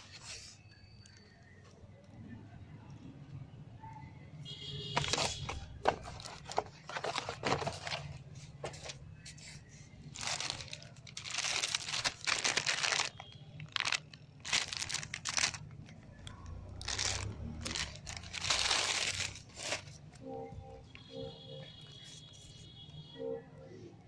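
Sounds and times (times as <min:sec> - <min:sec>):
packaging crinkling and rustling: 0:05.0 - 0:09.3, 0:10.1 - 0:20.1.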